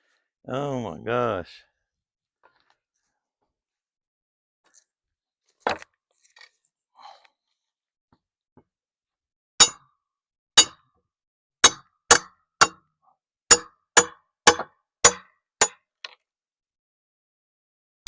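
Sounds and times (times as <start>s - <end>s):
hammer striking metal: 11.6s - 12.8s, 13.5s - 15.8s.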